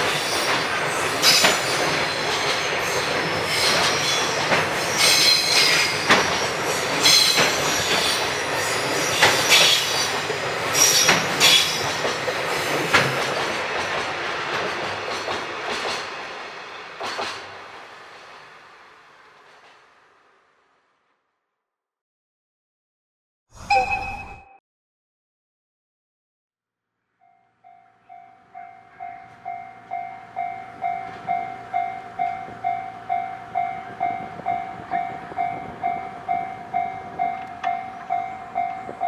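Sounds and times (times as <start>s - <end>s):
freight train wheels squealing: 0.0s - 17.5s
train wheels clacking over rail joints: 0.0s - 17.8s.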